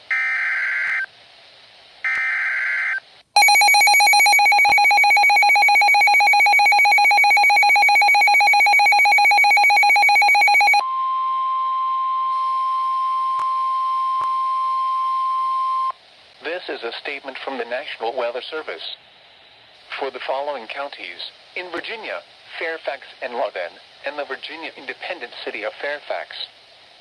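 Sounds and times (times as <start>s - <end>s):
warbling data bursts: 3.4s - 10.8s
harsh two-tone attention signal: 3.4s - 10.9s
steady single-pitch alert tone: 3.4s - 10.9s.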